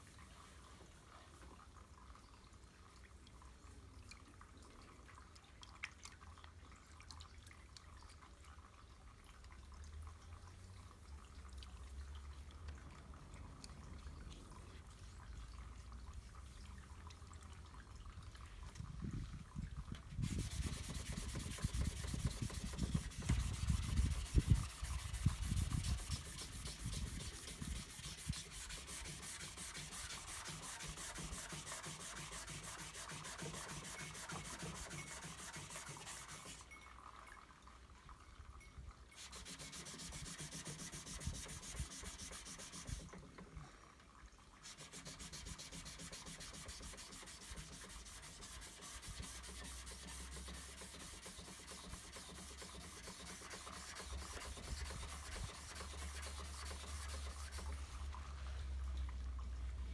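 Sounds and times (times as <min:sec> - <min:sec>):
sandpaper sanding filler: 0:20.2 - 0:36.6, 0:39.2 - 0:43.1, 0:44.6 - 0:58.0.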